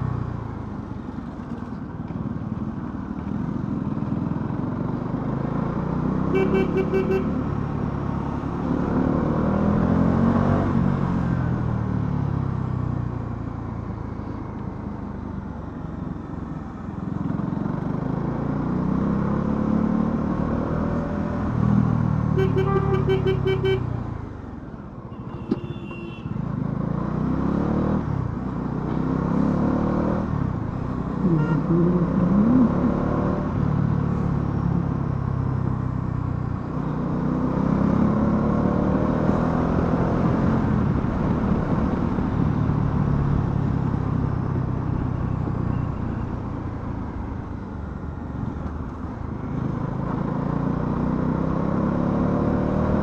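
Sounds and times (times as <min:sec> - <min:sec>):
vehicle horn: 0:06.3 - 0:07.5, 0:22.4 - 0:24.0, 0:25.1 - 0:26.4, 0:31.2 - 0:31.7
motorcycle engine revving: 0:28.8 - 0:35.4.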